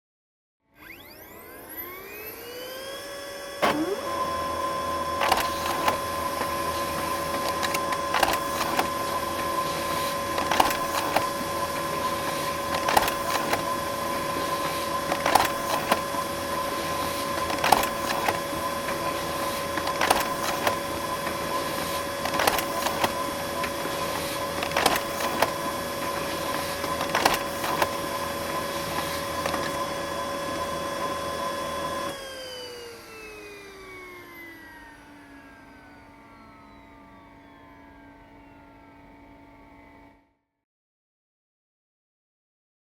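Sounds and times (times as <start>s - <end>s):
printer motor whine: 0.8s - 40.2s
printer paper feed click: 3.6s - 32.2s.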